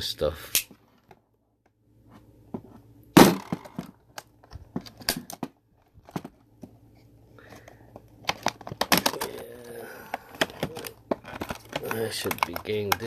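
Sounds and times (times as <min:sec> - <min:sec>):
packaging crinkling: 0:07.4 - 0:13.0
packaging ripping: 0:08.7 - 0:13.0
clicks and taps: 0:10.1 - 0:13.0.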